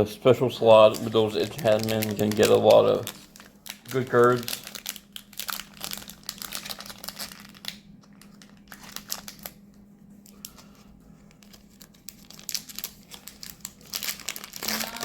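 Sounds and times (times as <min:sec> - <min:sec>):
plastic wrapper crinkling and tearing: 0:00.7 - 0:15.0.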